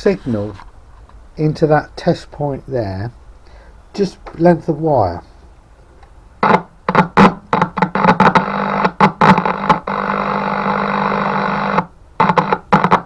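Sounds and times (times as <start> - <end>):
radio speaker buzzing: 0.0 - 0.7, 6.4 - 13.0.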